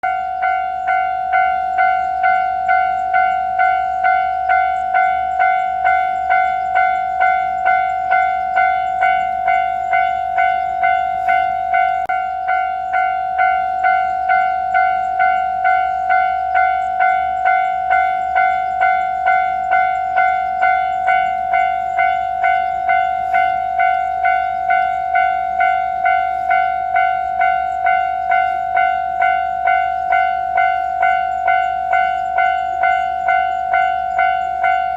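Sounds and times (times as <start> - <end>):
level crossing bell clanging: 0.0 - 34.9.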